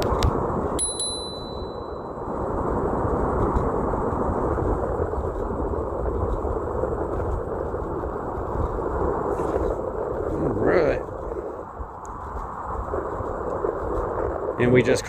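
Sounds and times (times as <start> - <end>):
wind buffeting microphone: 0.0 - 15.0
small bell ding: 0.8 - 2.2.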